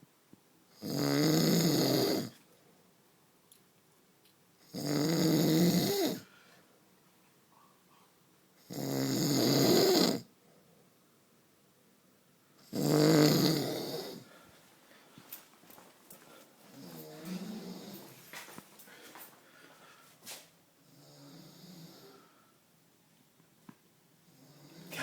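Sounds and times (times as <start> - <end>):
man snoring loudly: 0.8 - 2.3, 4.7 - 6.2, 8.7 - 10.3, 12.7 - 14.3, 24.4 - 25.0.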